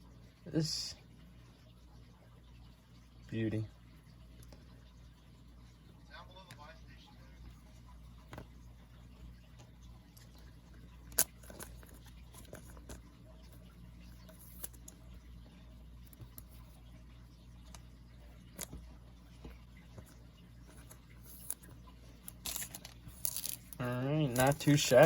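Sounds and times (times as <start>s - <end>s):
low room hum: 0.0s - 25.0s
cards being shuffled: 22.3s - 25.0s.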